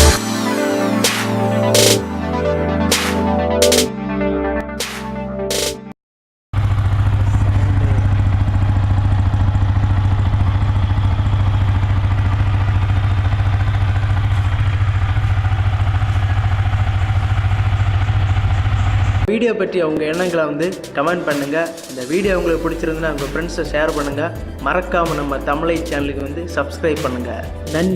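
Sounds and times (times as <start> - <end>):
motorcycle engine idling: 6.6 - 19.3.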